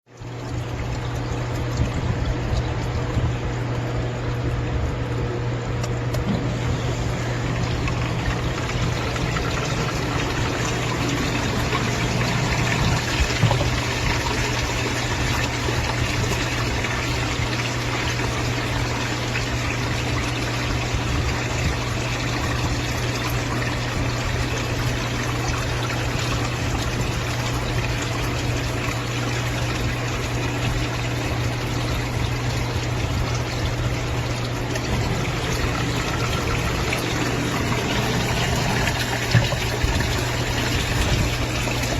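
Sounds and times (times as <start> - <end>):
low electric hum: 0.1 - 41.9
water rushing: 0.1 - 41.9.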